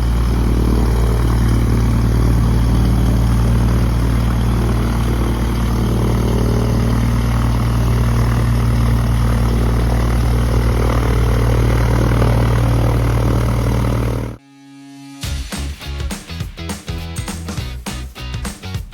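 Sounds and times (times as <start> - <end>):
propeller plane engine running: 0.0 - 14.4.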